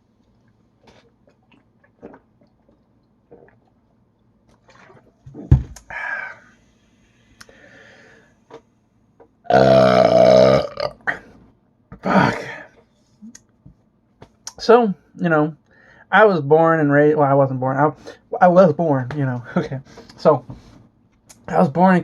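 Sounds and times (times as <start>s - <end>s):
faint small sounds: 0.0s - 9.5s
man burping loudly: 9.5s - 11.3s, 12.0s - 12.7s.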